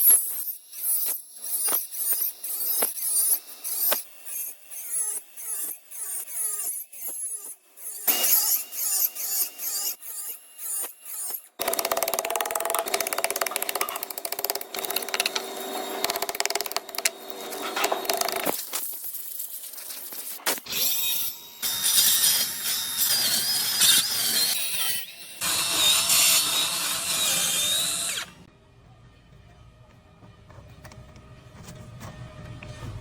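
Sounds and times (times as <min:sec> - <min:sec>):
power saw cutting wood: 0:00.4 - 0:18.6, 0:20.7 - 0:28.5.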